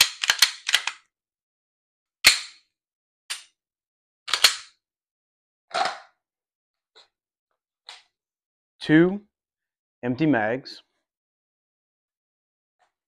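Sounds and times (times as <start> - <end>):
pistol metallic clicks: 0.0 - 1.0.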